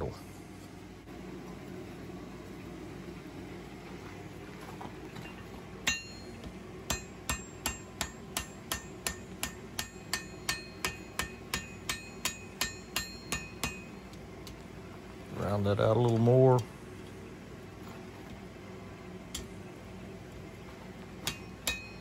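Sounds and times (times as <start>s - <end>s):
low steady hum: 0.0s - 22.0s
hammer striking steel on anvil: 5.8s - 14.2s, 21.2s - 22.0s.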